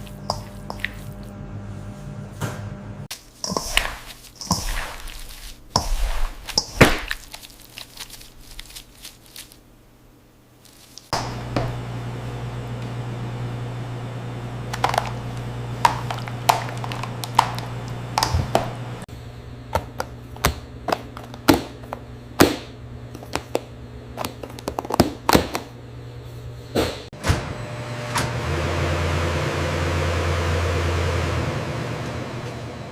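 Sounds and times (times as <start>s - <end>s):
steady low machine hum: 0.0s - 3.6s, 11.2s - 32.9s.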